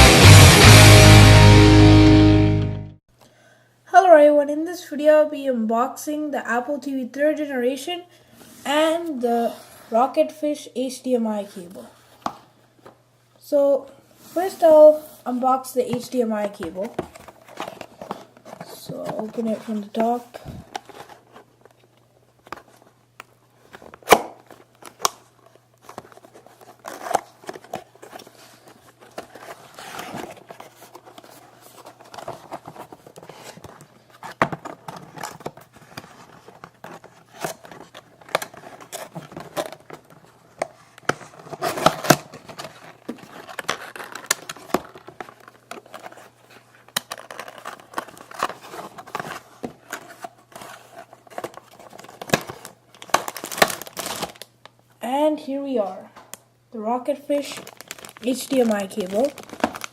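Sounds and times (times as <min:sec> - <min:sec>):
plastic packaging crinkling: 0:17.0 - 0:54.8, 0:57.3 - 0:59.9.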